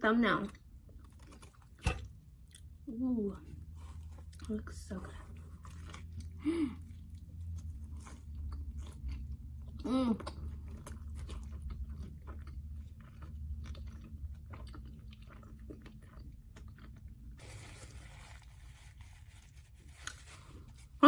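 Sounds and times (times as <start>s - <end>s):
person chewing food: 0.6s - 2.8s, 5.2s - 17.4s.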